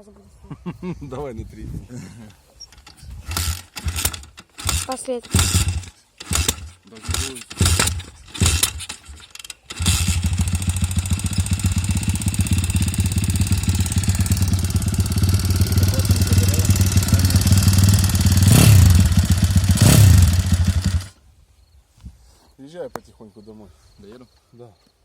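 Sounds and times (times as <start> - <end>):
motorcycle engine revving: 2.8 - 21.1.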